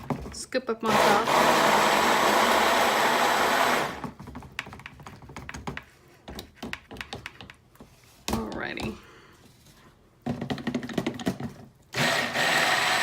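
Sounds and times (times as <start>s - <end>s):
stick blender running: 0.8s - 4.1s, 11.9s - 13.0s.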